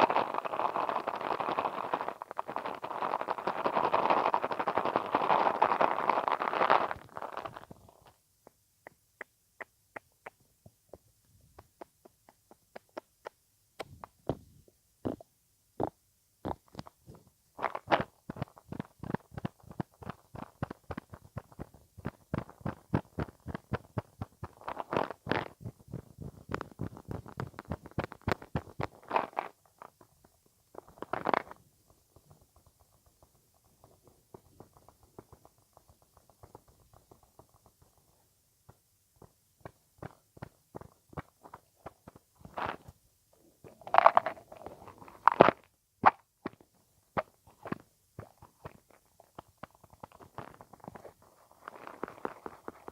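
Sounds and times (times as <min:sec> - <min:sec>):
wet mouth clicks and pops: 0:43.7 - 0:46.6.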